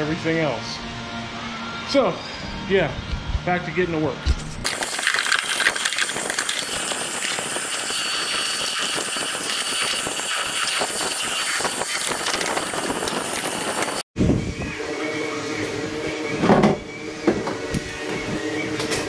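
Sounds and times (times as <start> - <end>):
sandblaster hissing: 4.6 - 14.1.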